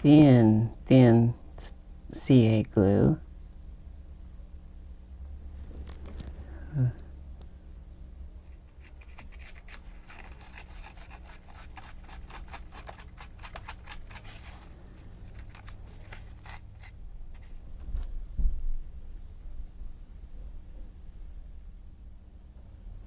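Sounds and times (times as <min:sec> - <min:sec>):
small clicks and scratches: 0:08.4 - 0:17.6.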